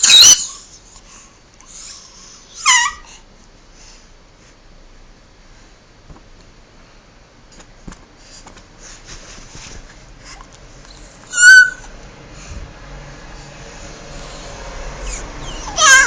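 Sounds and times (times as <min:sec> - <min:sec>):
baby squealing: 0:00.0 - 0:00.7, 0:02.6 - 0:03.1, 0:11.3 - 0:11.9, 0:15.0 - 0:16.0.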